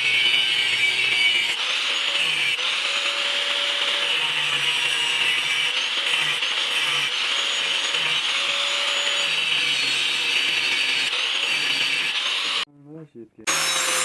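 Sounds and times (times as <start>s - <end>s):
tool rasping steel: 0.0s - 12.7s, 13.5s - 14.0s.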